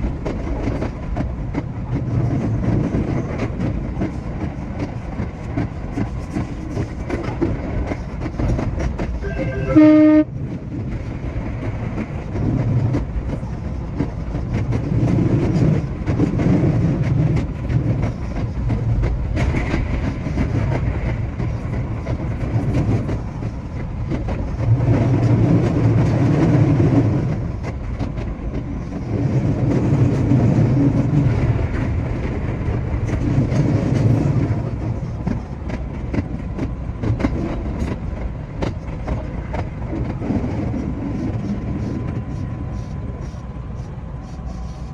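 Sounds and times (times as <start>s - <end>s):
train wheels and motors rumbling: 0.0s - 44.9s
train horn blast: 9.2s - 10.6s.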